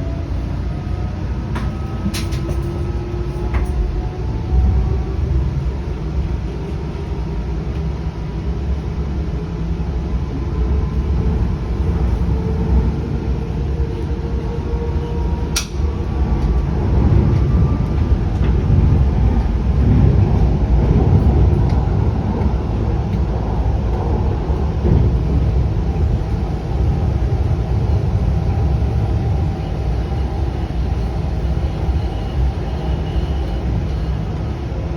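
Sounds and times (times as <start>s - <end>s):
train wheels rumbling on track: 0.0s - 34.9s.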